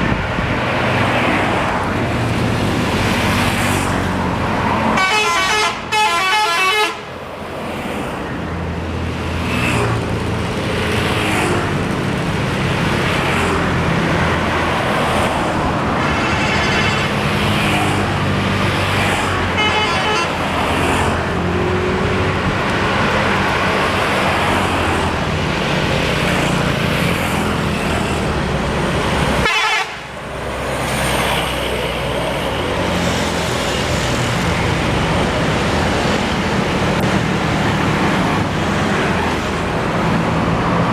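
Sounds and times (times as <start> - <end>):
bus engines running: 0.0 - 40.9
multi-tone bus horns playing tunes: 4.9 - 7.1, 16.0 - 17.2, 19.5 - 20.5, 29.4 - 30.2.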